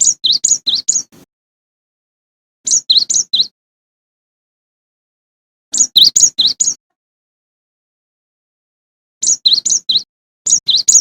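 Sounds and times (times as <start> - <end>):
bird singing sharp high notes: 0.0 - 1.2, 2.7 - 3.5, 5.8 - 6.8, 9.2 - 11.0.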